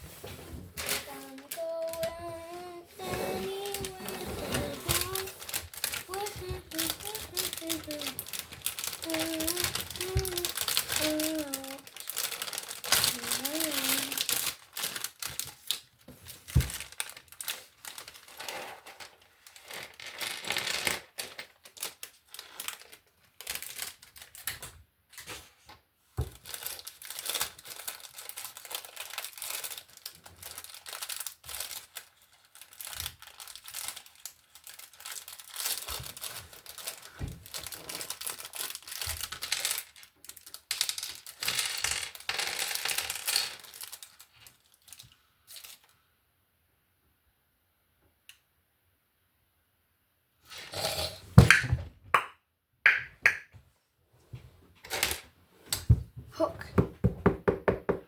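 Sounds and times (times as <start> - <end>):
rustling and crinkling: 0.0 - 46.0
plastic bricks clicking and clattering: 4.8 - 15.8, 26.3 - 45.9.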